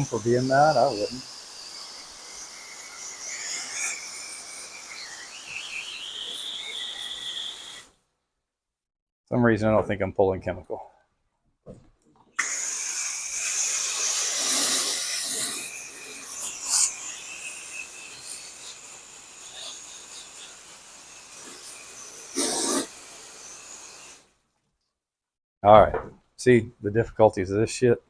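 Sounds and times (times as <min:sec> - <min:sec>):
pressure washer spraying water: 0:00.0 - 0:07.9, 0:12.4 - 0:24.2.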